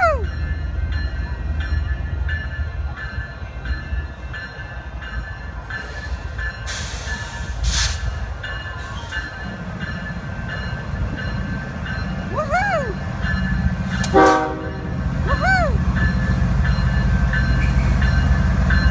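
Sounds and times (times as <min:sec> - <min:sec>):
train rumbling: 0:00.0 - 0:18.9
loud hiss: 0:05.7 - 0:09.4.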